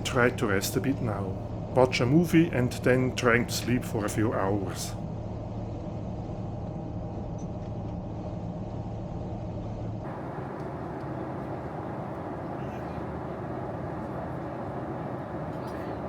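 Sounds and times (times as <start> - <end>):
aircraft engine and airflow roar: 0.0 - 5.0, 10.0 - 16.0
low cabin hum: 0.0 - 5.0, 10.0 - 16.0.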